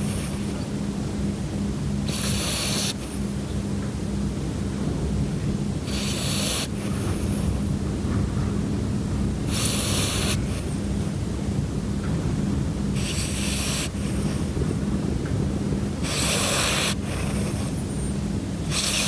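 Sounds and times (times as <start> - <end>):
steady low hum: 0.0 - 19.0
puppy snoring: 2.0 - 3.2, 5.8 - 7.6, 9.4 - 10.9, 13.0 - 14.5, 16.0 - 17.8, 18.6 - 19.0.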